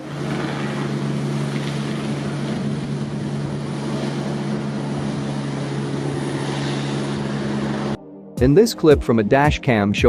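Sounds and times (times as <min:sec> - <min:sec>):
helicopter engine drone: 0:00.0 - 0:08.0.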